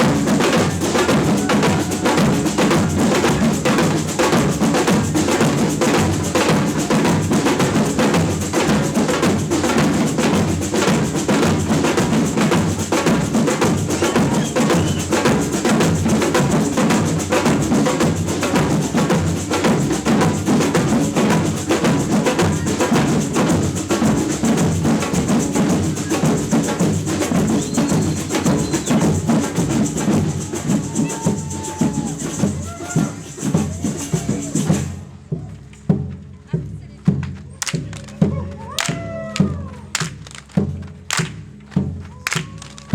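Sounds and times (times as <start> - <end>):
low drums: 0.0 - 42.9
sharp clicking percussion hits: 37.1 - 42.9.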